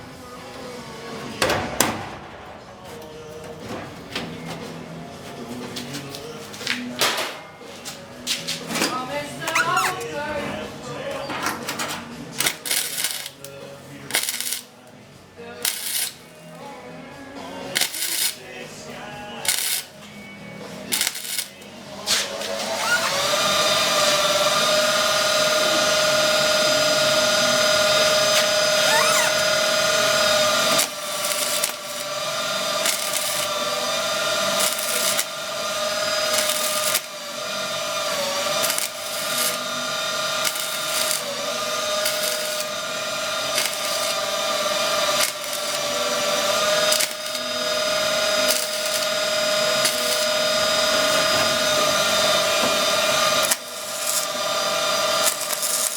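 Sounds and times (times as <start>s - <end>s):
angle grinder grinding metal: 8.9s - 14.8s, 15.6s - 16.6s, 17.7s - 18.7s, 19.4s - 20.0s, 20.8s - 55.9s.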